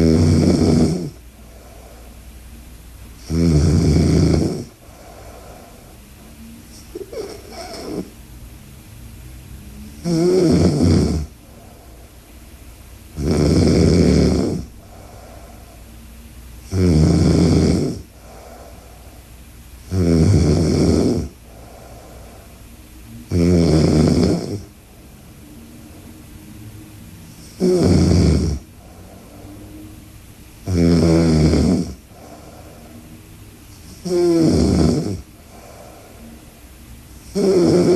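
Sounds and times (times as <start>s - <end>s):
woman snoring loudly: 0.0s - 1.2s, 3.2s - 4.8s, 6.9s - 8.1s, 10.0s - 11.3s, 13.2s - 14.7s, 16.7s - 18.5s, 19.9s - 21.4s, 23.3s - 24.7s, 27.4s - 28.6s, 30.6s - 32.0s, 33.8s - 35.8s, 37.2s - 37.9s.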